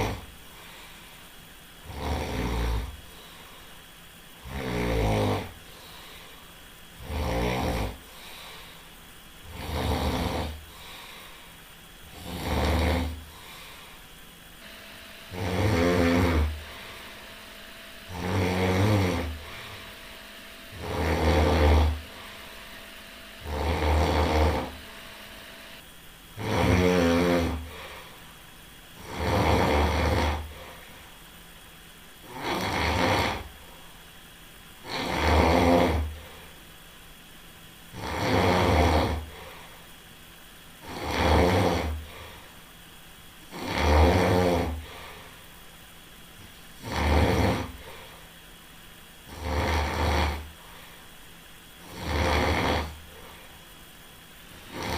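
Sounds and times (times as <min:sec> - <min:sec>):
person snoring: 0:00.0 - 0:01.0, 0:01.8 - 0:03.6, 0:04.4 - 0:06.4, 0:07.0 - 0:11.5, 0:12.1 - 0:14.0, 0:14.6 - 0:25.8, 0:26.4 - 0:28.2, 0:29.0 - 0:30.9, 0:32.2 - 0:33.5, 0:34.8 - 0:36.4, 0:38.0 - 0:39.7, 0:40.8 - 0:42.5, 0:43.5 - 0:45.4, 0:46.8 - 0:48.3, 0:49.3 - 0:51.0, 0:51.8 - 0:53.5, 0:54.5 - 0:54.9.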